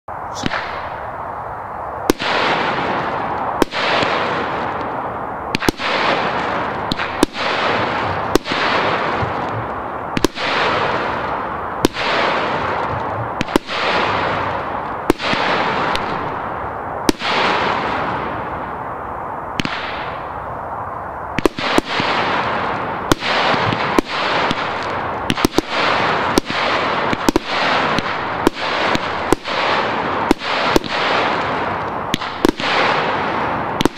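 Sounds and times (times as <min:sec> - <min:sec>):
firework hissing trails: 0:00.2 - 0:04.8
firework shots: 0:00.2 - 0:33.9.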